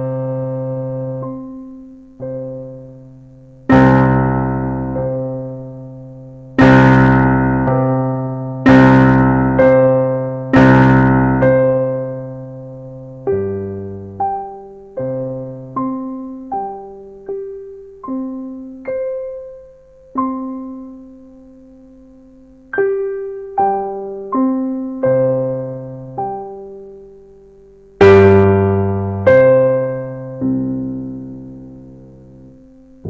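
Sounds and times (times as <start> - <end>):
piano notes and chords: 0.0 - 33.0.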